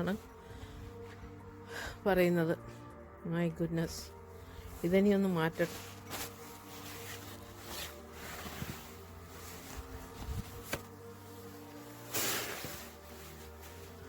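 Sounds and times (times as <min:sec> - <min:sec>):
shovel scraping snow: 0:04.9 - 0:14.0.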